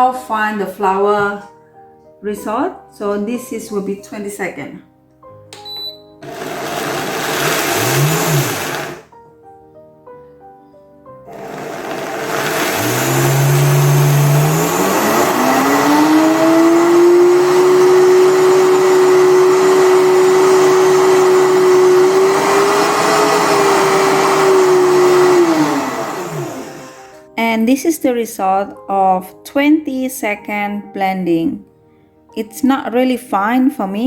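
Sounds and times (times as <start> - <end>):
blender motor grinding: 6.2 - 9.1, 11.3 - 27.3.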